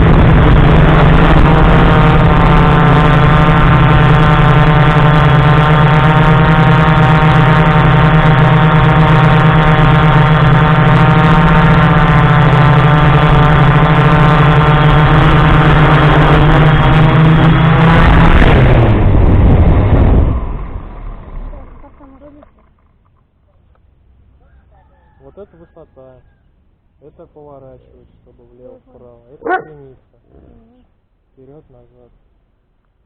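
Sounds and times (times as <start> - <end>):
drone propellers buzzing: 0.0 - 24.4.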